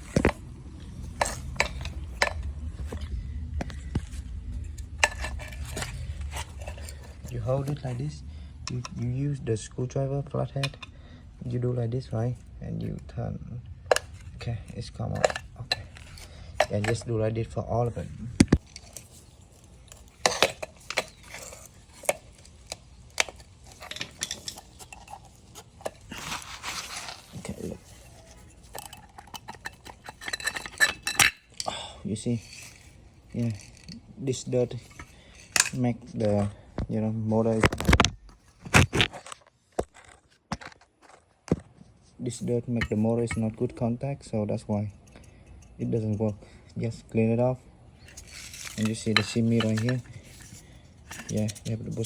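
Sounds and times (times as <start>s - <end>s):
metal parts clinking and knocking: 0.0s - 9.2s, 10.5s - 11.0s, 13.9s - 36.4s, 42.4s - 43.8s, 48.0s - 52.0s
low steady hum: 0.0s - 39.1s
screwdriver scraping metal: 1.0s - 9.1s, 13.9s - 17.2s, 17.8s - 35.8s, 44.7s - 46.8s, 48.0s - 52.0s.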